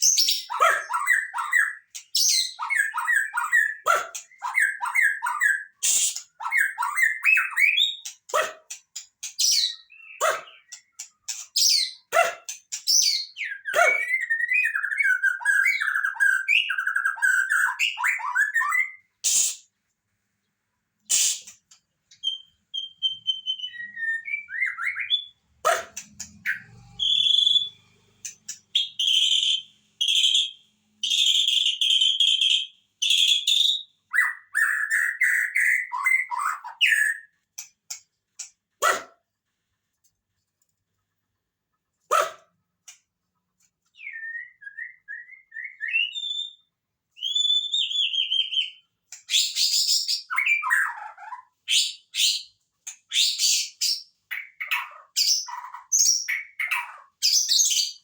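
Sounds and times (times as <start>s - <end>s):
bird singing whistled phrases: 12.9s - 19.6s, 22.2s - 25.4s, 26.5s - 27.8s, 28.8s - 37.3s, 43.9s - 52.5s.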